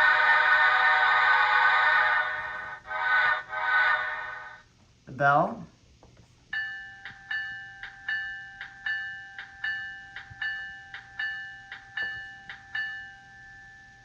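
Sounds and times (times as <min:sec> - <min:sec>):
locomotive bell ringing: 0:06.5 - 0:14.0.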